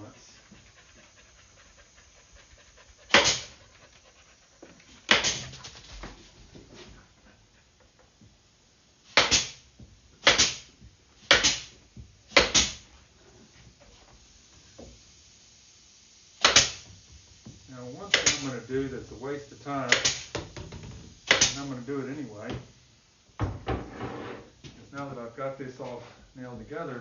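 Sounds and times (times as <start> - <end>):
pneumatic pin tacker firing: 3.1 - 3.5, 5.1 - 5.5, 9.1 - 9.6, 10.2 - 12.9, 16.4 - 17.0, 18.1 - 18.6, 19.9 - 21.7.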